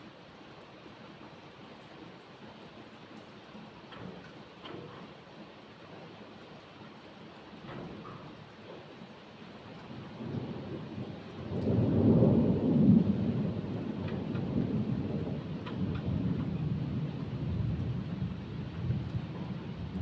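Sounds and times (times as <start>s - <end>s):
steady rain: 0.0s - 20.0s
thunder rolling: 10.1s - 20.0s.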